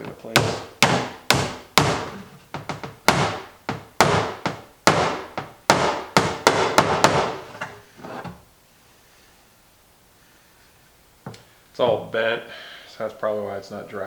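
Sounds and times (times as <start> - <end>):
hammer striking rivet: 0.4 - 7.6.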